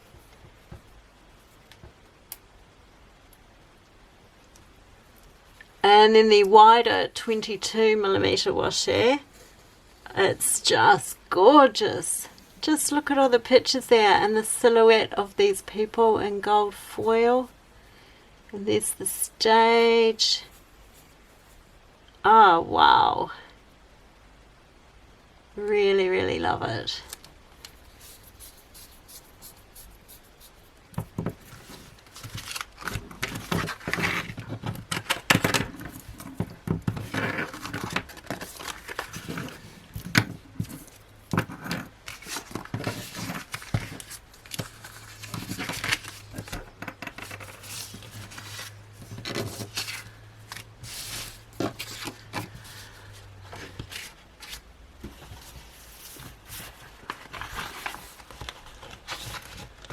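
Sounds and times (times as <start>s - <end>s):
paper and plastic rustling: 27.1s - 59.9s.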